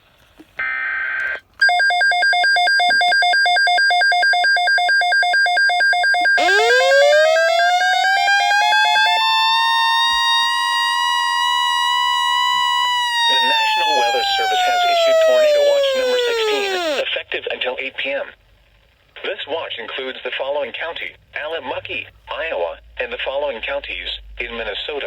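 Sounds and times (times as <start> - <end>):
buzzing data burst: 6.4 - 17.0
electronic beeping alternating pitches: 6.4 - 17.0
rising siren-like wail: 6.4 - 17.0
steady high tone: 6.4 - 17.0.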